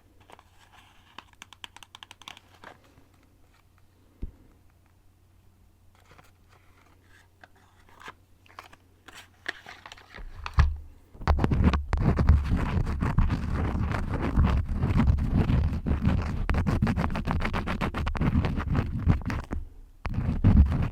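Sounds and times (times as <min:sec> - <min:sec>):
crayons scratching on paper: 0:11.6 - 0:19.5, 0:20.1 - 0:20.9.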